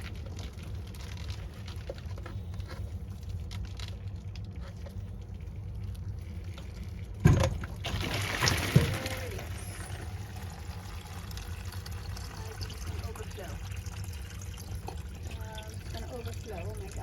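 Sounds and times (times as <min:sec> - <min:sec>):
water draining into a container: 0:04.2 - 0:17.0.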